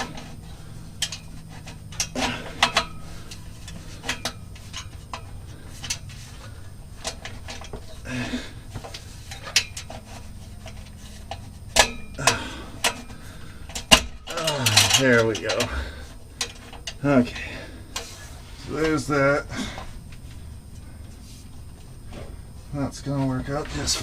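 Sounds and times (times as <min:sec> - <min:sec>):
steady low hum: 0:00.0 - 0:24.0
metal clicks and knocks: 0:01.0 - 0:06.2, 0:08.8 - 0:15.8.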